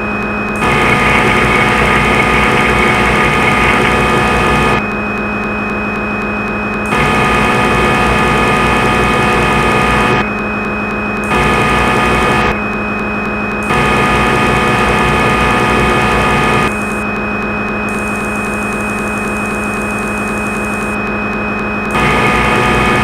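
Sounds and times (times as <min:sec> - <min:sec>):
milling machine motor whine: 0:00.0 - 0:23.0
steady electrical hum: 0:00.5 - 0:04.8, 0:21.9 - 0:23.0.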